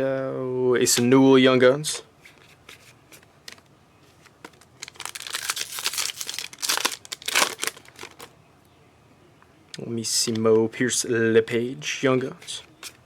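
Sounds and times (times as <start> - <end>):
card pack wrapper crinkling: 4.2 - 8.3.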